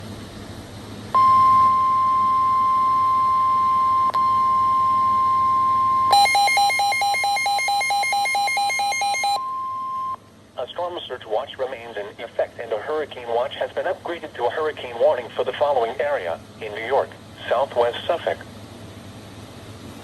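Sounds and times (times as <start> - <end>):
rapid beeps: 1.2 - 10.2
steady alert tone: 1.2 - 10.2.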